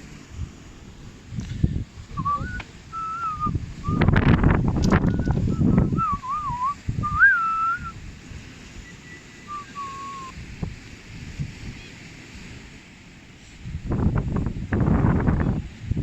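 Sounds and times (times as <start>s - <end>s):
faint low wind: 0.0s - 16.0s
person whistling: 2.2s - 4.1s, 5.1s - 8.0s, 8.8s - 10.3s.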